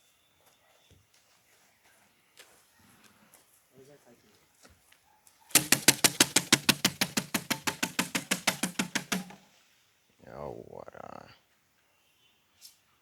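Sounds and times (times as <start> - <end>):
rapid knocking on hollow box: 5.6 - 9.4.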